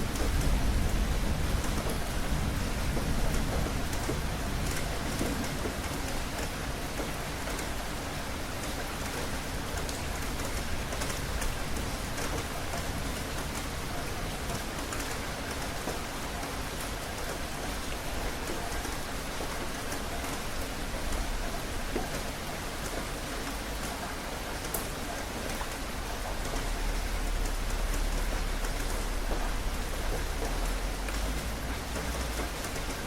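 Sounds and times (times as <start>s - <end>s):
raindrops ticking on a surface: 0.0s - 33.0s
rain hissing: 23.1s - 33.0s.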